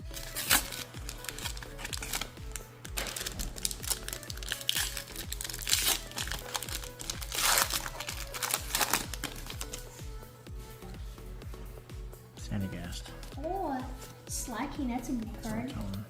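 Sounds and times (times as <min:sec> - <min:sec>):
background music with beat: 0:00.0 - 0:16.0
foil wrapper crinkling and tearing: 0:00.1 - 0:09.9.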